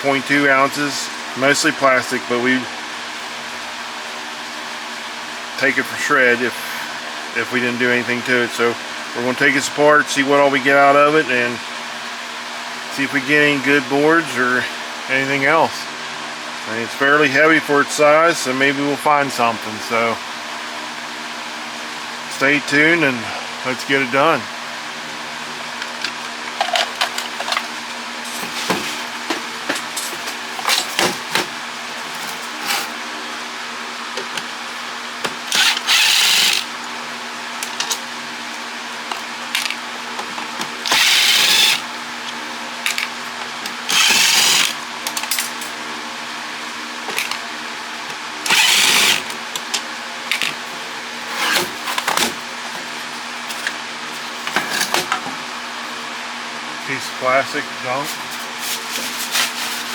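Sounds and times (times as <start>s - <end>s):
power drill running: 34.2s - 45.3s, 48.4s - 50.6s.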